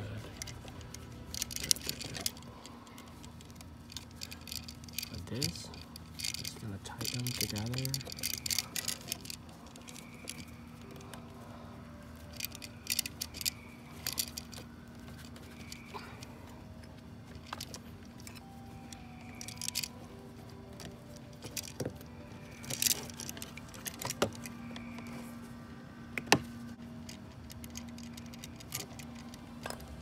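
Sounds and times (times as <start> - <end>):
small metallic clicks and rattles: 0.0 - 25.4, 26.2 - 30.0
steady low hum: 0.0 - 30.0.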